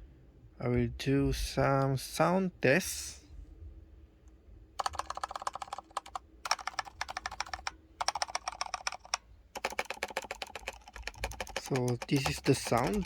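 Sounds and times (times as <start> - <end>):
mechanical keyboard typing: 4.8 - 13.0.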